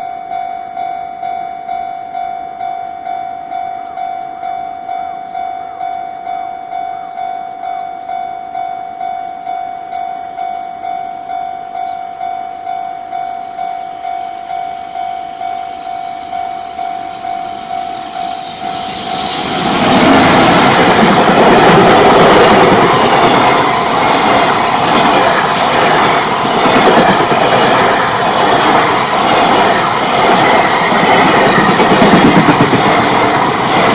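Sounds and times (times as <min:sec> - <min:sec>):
level crossing warning bell: 0:00.0 - 0:19.2
freight train rushing: 0:07.6 - 0:33.9.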